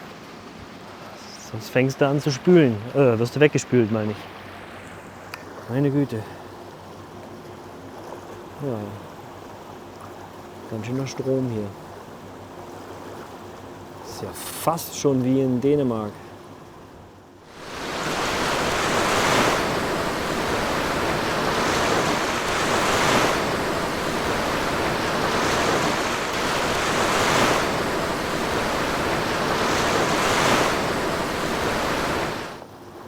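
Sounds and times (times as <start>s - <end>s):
river rushing: 17.5s - 32.6s.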